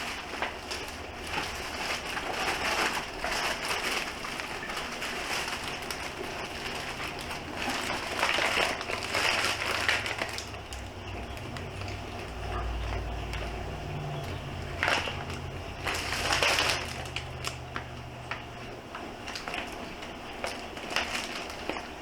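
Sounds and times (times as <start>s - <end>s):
plastic packaging crinkling: 0.0s - 22.0s.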